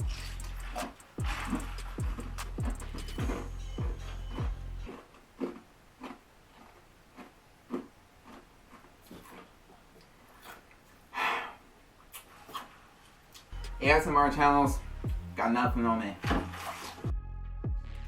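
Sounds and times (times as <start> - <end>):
ice cubes being chewed: 4.8 - 10.7.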